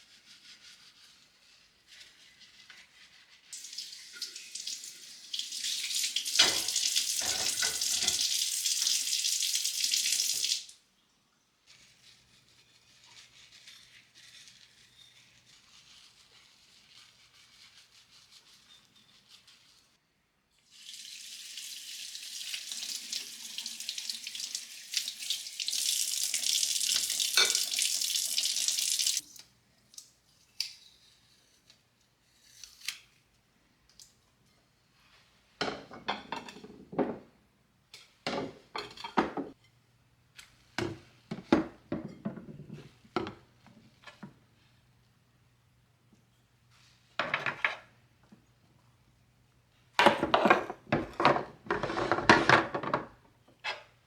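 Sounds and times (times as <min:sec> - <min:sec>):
knocks and clatter of handling: 0:50.0 - 0:53.2.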